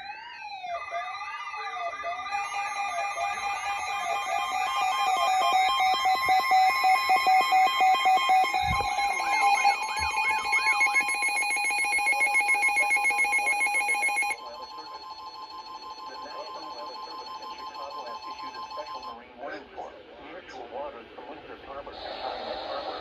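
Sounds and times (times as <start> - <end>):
overlapping electronic alert tones: 0.8 - 18.9.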